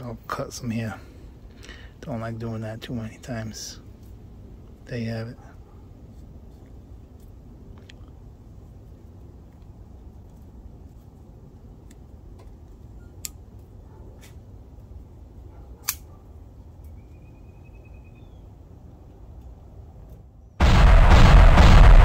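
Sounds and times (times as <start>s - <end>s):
low background rumble: 20.6s - 22.0s.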